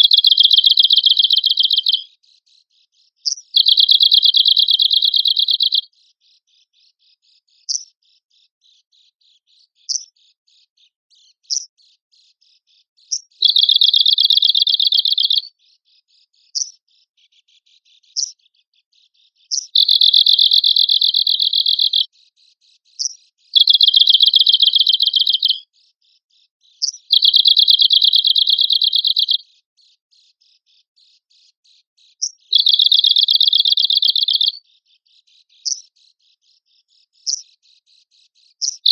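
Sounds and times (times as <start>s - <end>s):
bird buzzy trills: 0.0s - 2.0s, 3.3s - 5.9s, 13.1s - 15.5s, 19.5s - 22.1s, 23.0s - 25.6s, 26.8s - 29.4s, 32.2s - 34.6s
sharp bird call notes: 0.0s - 2.0s, 23.6s - 25.6s, 32.5s - 34.5s.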